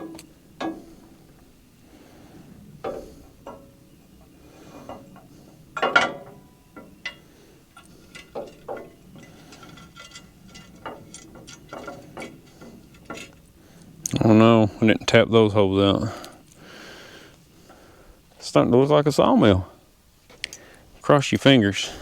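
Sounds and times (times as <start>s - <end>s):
metal clatter: 2.8s - 13.6s
metallic clicks and clanks: 4.9s - 14.2s
ratcheting: 5.8s - 13.5s.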